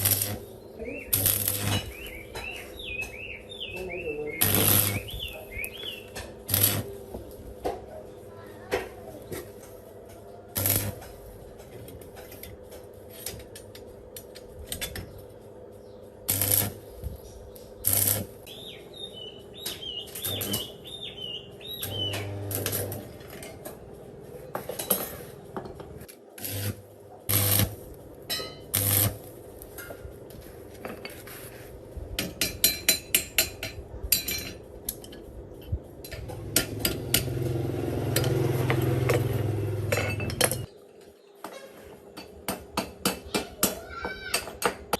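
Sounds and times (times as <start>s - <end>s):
metal tools clinking: 39.9s - 40.7s.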